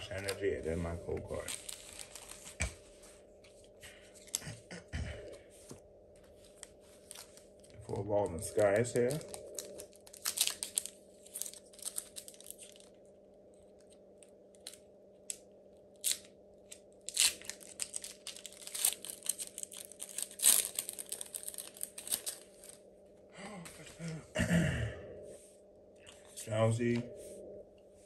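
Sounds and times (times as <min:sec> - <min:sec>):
wrapper crinkling: 0:01.3 - 0:02.6, 0:06.4 - 0:13.0, 0:17.0 - 0:22.8
foil pack tearing: 0:01.4 - 0:02.5, 0:08.8 - 0:12.9, 0:17.1 - 0:22.8.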